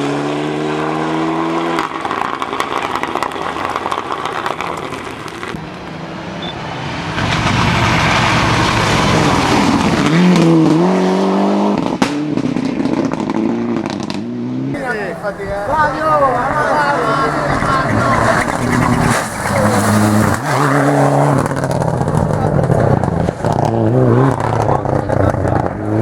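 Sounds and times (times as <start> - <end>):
rally car engine revving: 0.0 - 26.0
loud rushing noise: 5.4 - 10.8.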